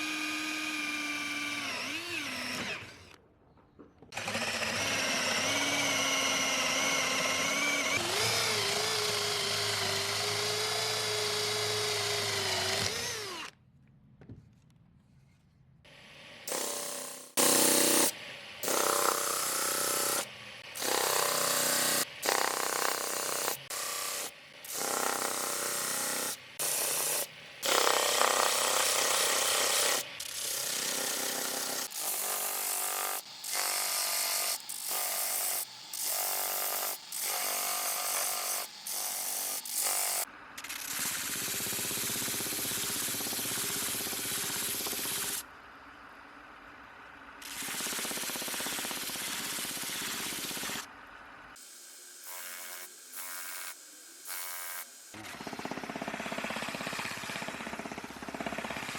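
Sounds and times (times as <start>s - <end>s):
power tool working on wood: 4.2s - 13.5s.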